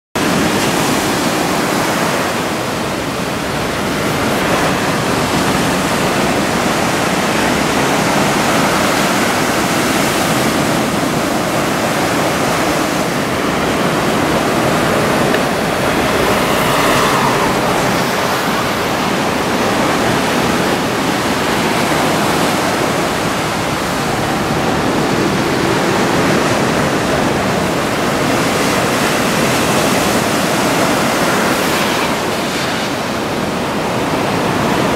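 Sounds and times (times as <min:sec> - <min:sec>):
surf breaking along shore: 0:00.2 - 0:34.9.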